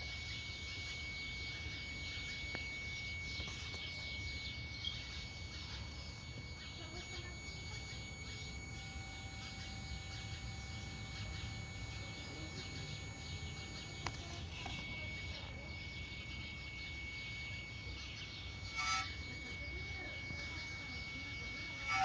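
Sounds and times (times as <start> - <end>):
steady high-pitched whine: 0.0 - 22.0.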